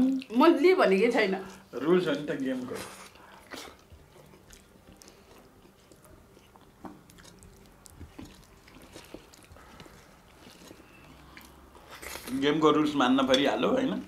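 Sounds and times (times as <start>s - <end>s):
people chewing: 0.0s - 14.0s.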